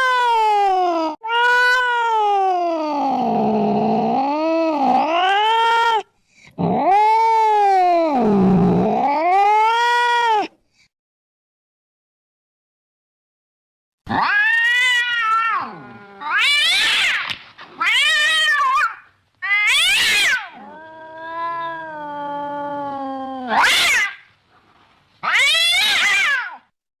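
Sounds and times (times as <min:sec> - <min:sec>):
cat meowing loudly: 0:00.0 - 0:02.7, 0:14.1 - 0:24.3, 0:25.2 - 0:26.7.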